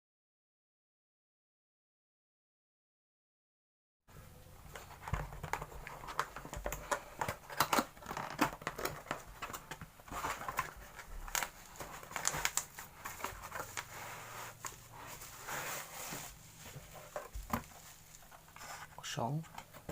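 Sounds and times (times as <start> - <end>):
plastic packaging crinkling: 4.8 - 18.8.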